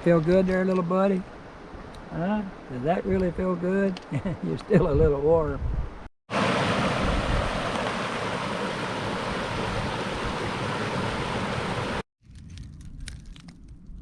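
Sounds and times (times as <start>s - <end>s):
flowing creek water: 6.3s - 12.0s
light ticks and crunches: 12.2s - 14.0s.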